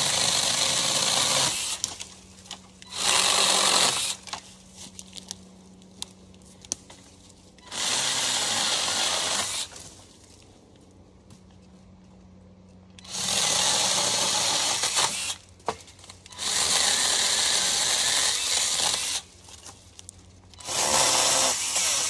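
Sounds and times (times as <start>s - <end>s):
mini chainsaw cutting wood: 0.0s - 2.1s, 2.8s - 4.4s, 7.6s - 9.9s, 13.0s - 15.5s, 16.3s - 19.3s, 20.6s - 22.0s.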